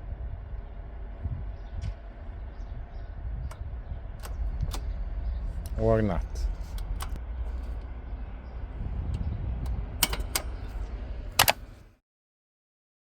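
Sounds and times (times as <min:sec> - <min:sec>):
steady low rumble: 0:00.0 - 0:12.0
sharp mechanical clicks: 0:03.5 - 0:07.9, 0:09.1 - 0:11.9.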